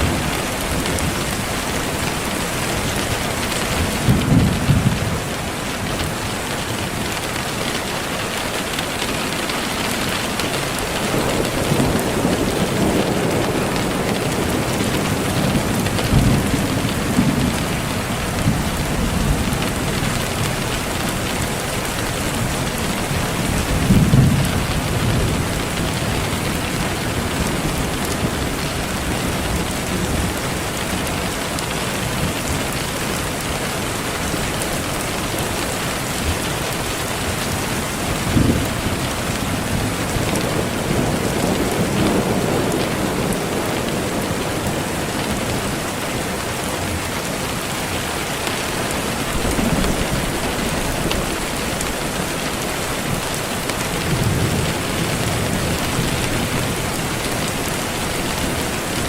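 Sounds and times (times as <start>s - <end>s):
distant thunder rumbles: 0.0s - 5.4s, 9.3s - 31.4s.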